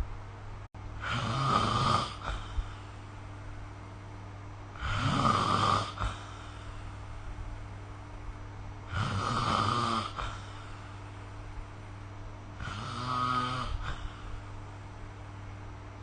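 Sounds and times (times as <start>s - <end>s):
steady low hum: 0.0s - 16.0s
person snoring: 1.0s - 2.8s, 4.8s - 6.7s, 8.9s - 10.9s, 12.6s - 14.4s.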